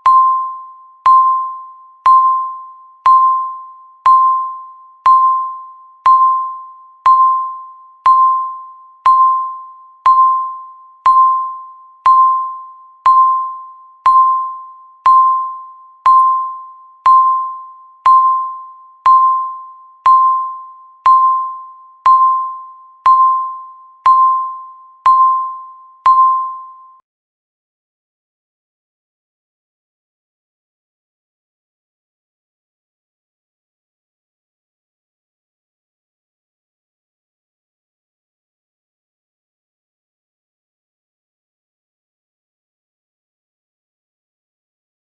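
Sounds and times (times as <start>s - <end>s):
countdown timer beeping: 0.0s - 27.0s.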